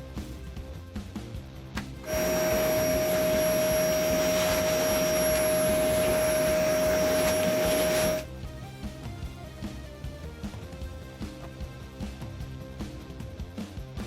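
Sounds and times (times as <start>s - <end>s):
air tool whining: 2.0s - 8.2s.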